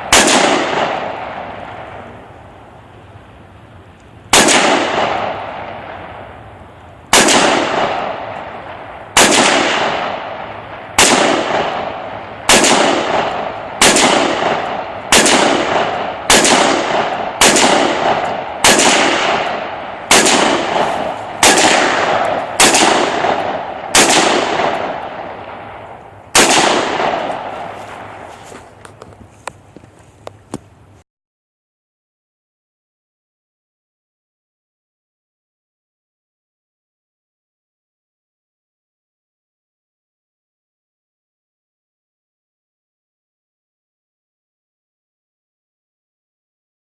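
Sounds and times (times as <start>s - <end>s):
rifle shots echoing: 0.0s - 2.5s, 4.3s - 29.0s.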